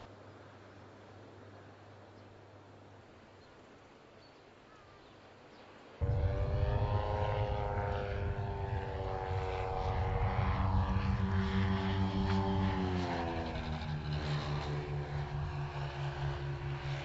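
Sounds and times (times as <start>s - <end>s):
propeller drone flying: 6.0s - 17.0s.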